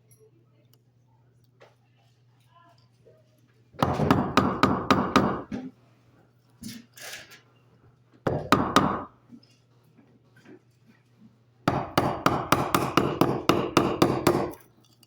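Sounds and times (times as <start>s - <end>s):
mallet striking wood chisel: 3.8s - 5.5s, 8.3s - 9.1s, 11.7s - 14.6s.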